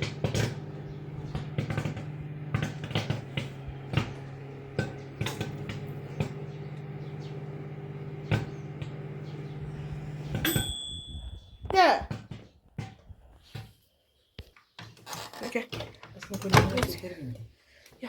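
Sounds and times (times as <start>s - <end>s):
popcorn popping: 0.0s - 9.2s
microwave oven humming: 0.0s - 11.6s.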